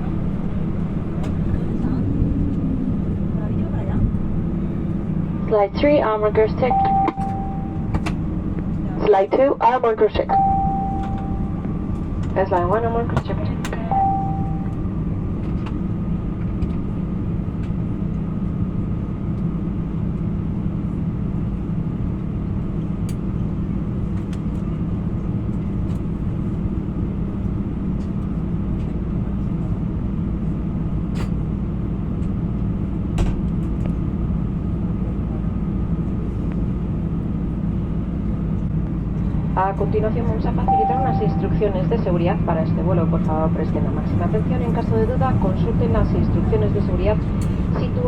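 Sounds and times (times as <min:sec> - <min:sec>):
aircraft cabin rumble and hum: 0:00.0 - 0:48.0
faint high tone: 0:06.6 - 0:07.9, 0:10.3 - 0:11.6, 0:13.8 - 0:14.8, 0:40.6 - 0:41.8.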